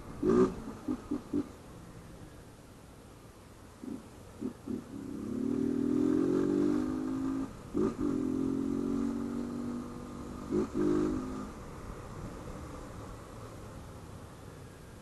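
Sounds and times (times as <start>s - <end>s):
motorcycle engine revving: 0.0s - 1.6s, 3.8s - 11.7s.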